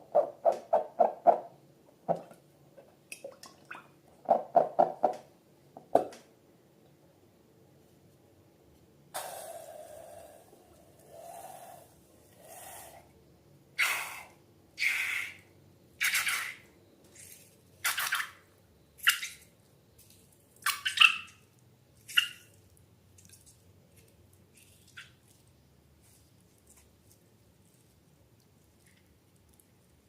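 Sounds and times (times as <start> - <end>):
high squeak of trapped air: 16.0 - 16.7
slime squelching: 22.0 - 30.0.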